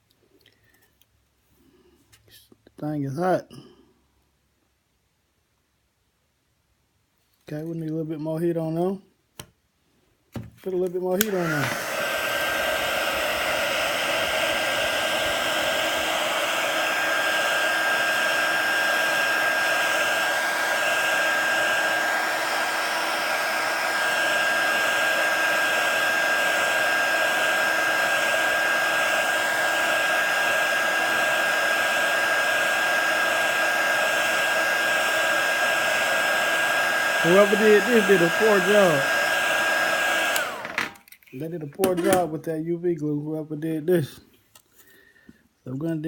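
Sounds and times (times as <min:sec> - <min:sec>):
heat gun blowing air: 0:10.7 - 0:41.1.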